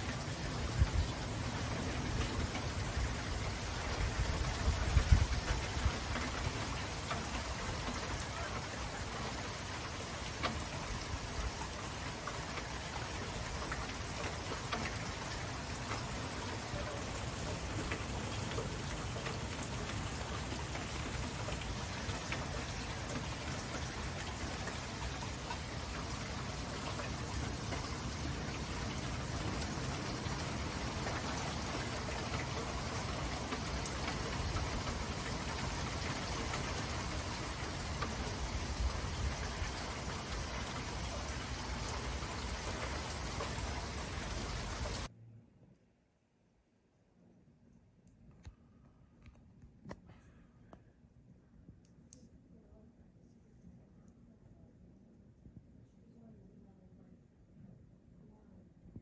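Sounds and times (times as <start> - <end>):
heavy rain falling: 0.0 - 45.1.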